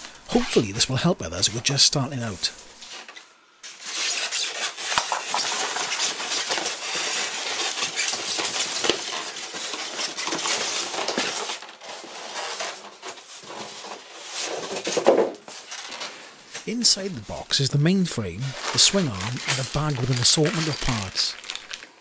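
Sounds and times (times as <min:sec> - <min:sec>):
packaging rustling: 0:01.6 - 0:22.0
metal parts clinking: 0:18.6 - 0:21.9.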